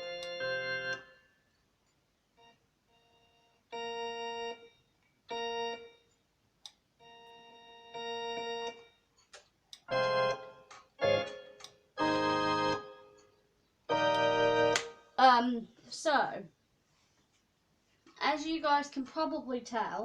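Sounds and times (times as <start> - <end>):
keyboard organ chords: 0.0 - 1.4, 2.2 - 6.1, 7.0 - 9.1, 9.8 - 15.2.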